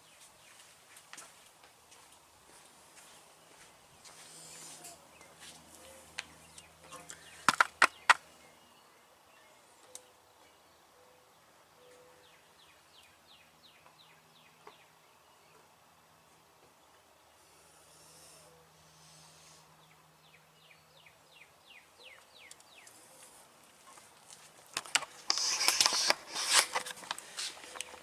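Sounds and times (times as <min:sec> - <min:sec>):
faint outdoor background: 0:00.0 - 0:28.0
sharp taps: 0:07.5 - 0:08.2.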